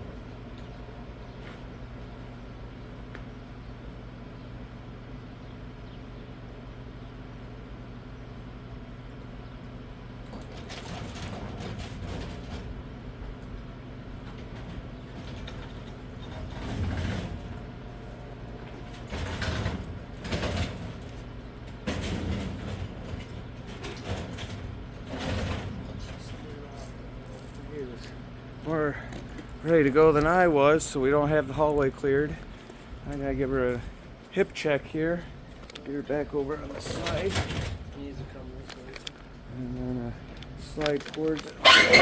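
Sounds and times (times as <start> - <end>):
steady low hum: 0.0 - 42.0
tool box dragged scraping: 41.6 - 42.0.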